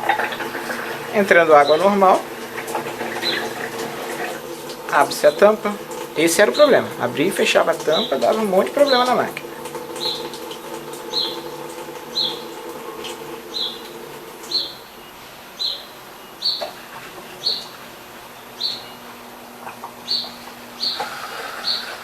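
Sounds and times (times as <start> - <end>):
washing machine humming: 0.0 - 22.0
small bird chirping: 3.2 - 3.5, 10.0 - 10.4, 11.0 - 11.5, 12.1 - 12.5, 13.5 - 13.9, 14.5 - 22.0.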